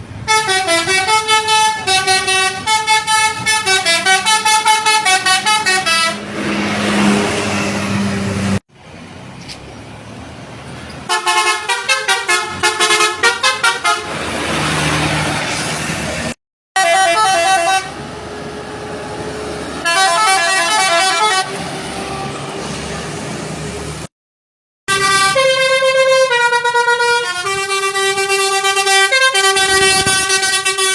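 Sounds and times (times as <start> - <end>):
bus engine: 0.0 - 24.1, 24.9 - 30.9
road noise: 0.0 - 24.1, 24.9 - 30.9
bus musical horn tune: 0.2 - 6.4, 11.1 - 14.2, 16.8 - 22.5, 24.9 - 30.9.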